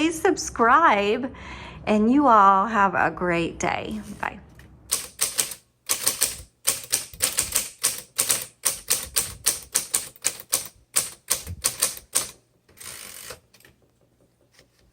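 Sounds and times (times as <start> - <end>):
manual typewriter keys clacking: 4.9 - 13.9.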